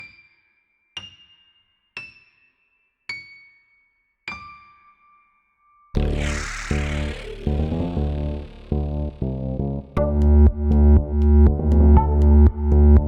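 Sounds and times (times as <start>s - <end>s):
electronic music with heavy bass: 6.0s - 10.0s.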